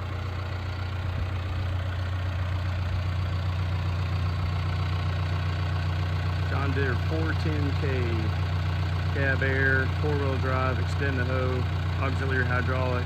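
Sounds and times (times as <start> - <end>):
diesel engine idling: 0.0 - 13.0.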